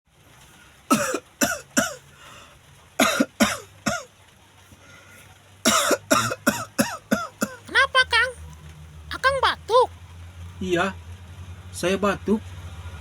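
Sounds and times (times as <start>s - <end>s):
man coughing: 0.9s - 2.0s, 3.0s - 4.0s, 5.7s - 7.6s.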